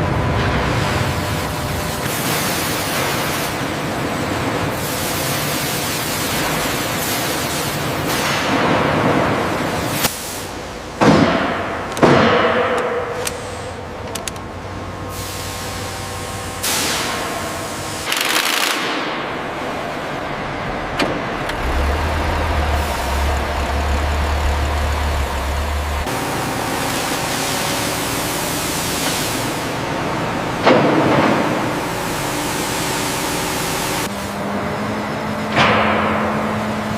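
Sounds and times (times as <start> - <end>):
steady machinery hiss: 0.6 - 11.0, 14.7 - 34.2
low machine hum: 8.6 - 36.9
rushes of noise: 21.3 - 26.1.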